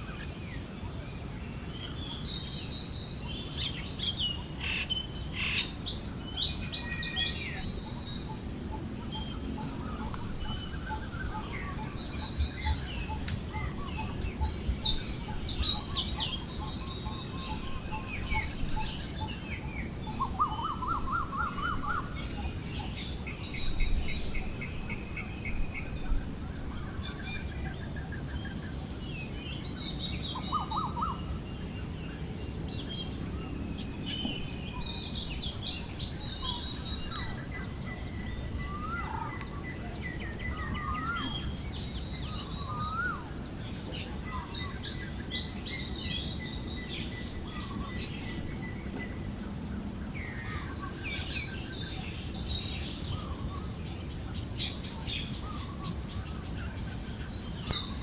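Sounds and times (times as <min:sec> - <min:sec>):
insect drone: 0:00.0 - 0:58.0.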